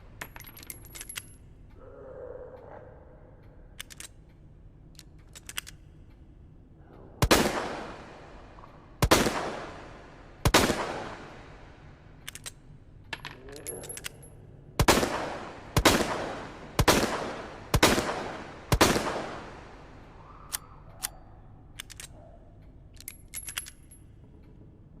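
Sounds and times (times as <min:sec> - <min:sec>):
metallic clicks and rattles: 0:00.1 - 0:01.8, 0:03.4 - 0:06.3, 0:12.2 - 0:14.4, 0:20.5 - 0:25.0
revolver action clicks: 0:03.4 - 0:06.4, 0:11.3 - 0:15.1, 0:16.8 - 0:25.0.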